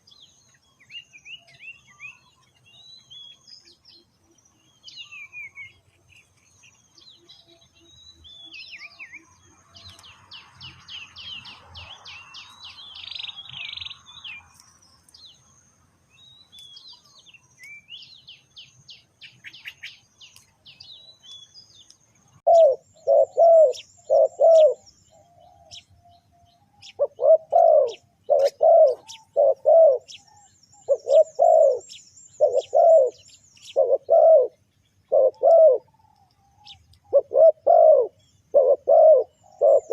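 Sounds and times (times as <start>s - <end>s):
small birds chirping: 0.0s - 39.9s
dove cooing: 22.4s - 39.9s.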